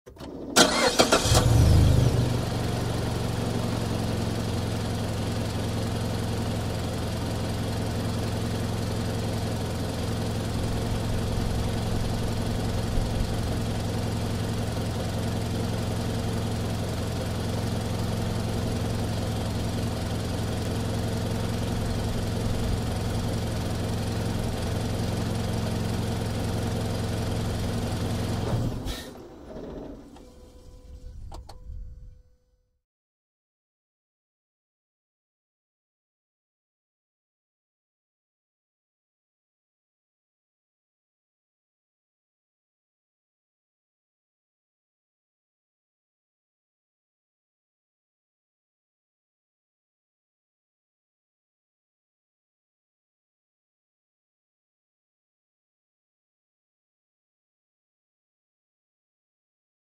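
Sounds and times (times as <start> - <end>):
car starter cranking: 0.1 - 1.7
car engine idling: 0.6 - 28.4.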